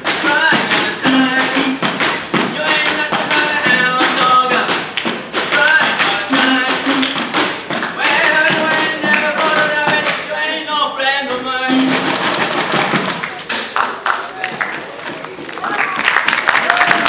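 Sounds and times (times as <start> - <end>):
tapping on everyday objects: 0.0 - 10.4
music with sung melody: 0.0 - 13.2.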